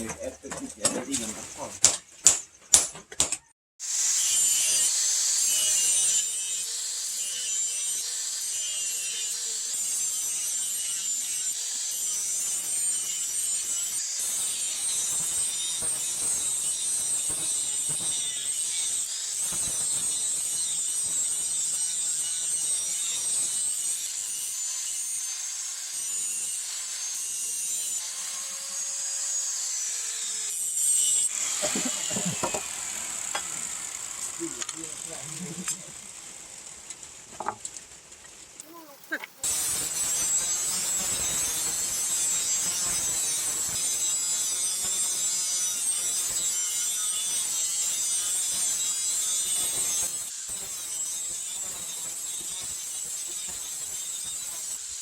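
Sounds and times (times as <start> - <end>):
power grinder grinding steel: 0.0 - 1.8, 3.8 - 37.9, 38.6 - 55.0.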